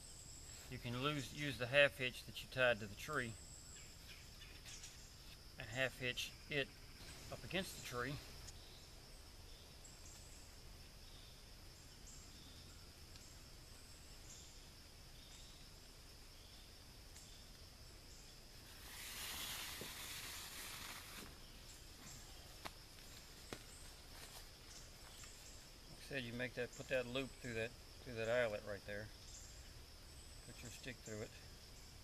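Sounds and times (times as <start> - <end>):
high insect drone: 0.0 - 32.0
rustling: 18.6 - 25.7.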